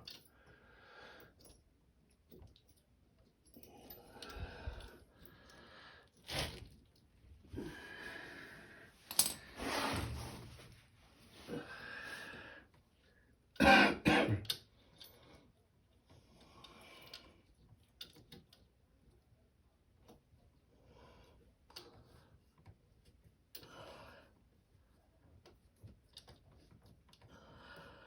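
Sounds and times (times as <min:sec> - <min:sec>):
soft breathing: 0:03.6 - 0:06.3, 0:07.4 - 0:09.8, 0:11.2 - 0:13.4, 0:27.2 - 0:28.0
man clearing throat: 0:13.6 - 0:14.5.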